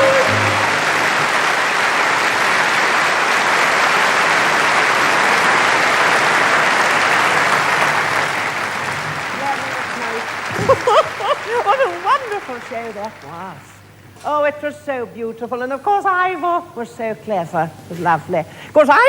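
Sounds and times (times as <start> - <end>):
audience applauding: 0.0 - 13.9.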